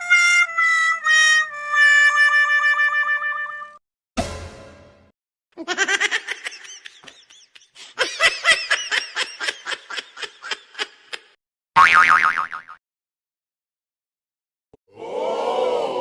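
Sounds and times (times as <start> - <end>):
high-pitched giggling laugh: 5.6 - 11.4.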